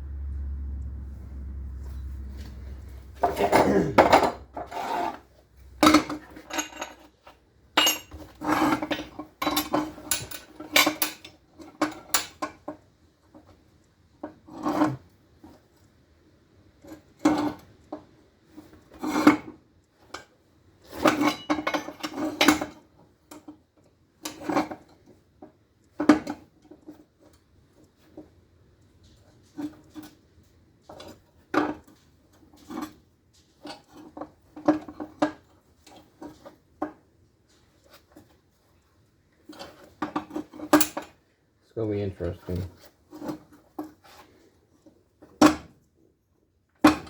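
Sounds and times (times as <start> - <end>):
low hum: 0.0 - 3.4
metal scraping and clinking: 1.1 - 12.5, 39.4 - 41.2.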